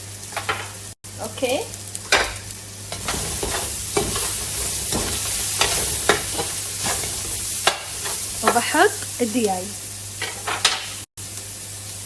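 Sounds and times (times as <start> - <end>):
food sizzling in hot oil: 0.0 - 12.0
spoon scraping and knocking pot: 2.1 - 8.7.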